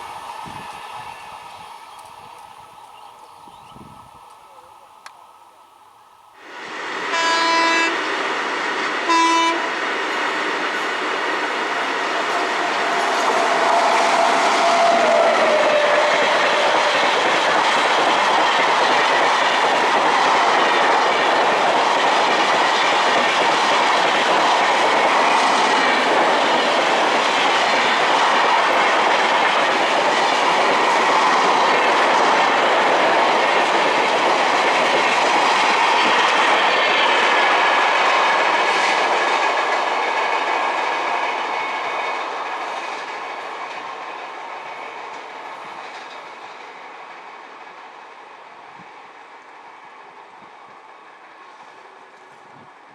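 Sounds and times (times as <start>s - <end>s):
train passing at speed: 0.0s - 52.9s
train horn blast: 7.1s - 8.1s, 9.0s - 9.8s.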